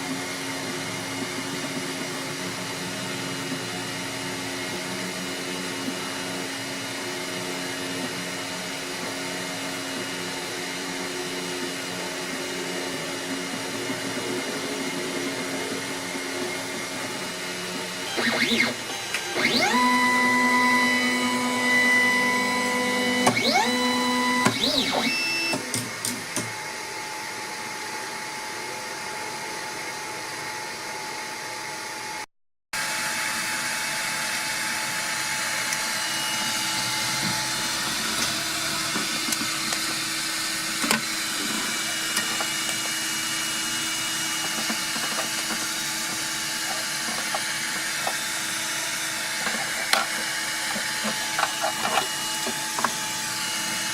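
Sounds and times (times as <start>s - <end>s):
motors and cooling fans whirring: 0.0s - 53.9s
stepper motors whining: 13.5s - 25.8s, 35.5s - 53.9s.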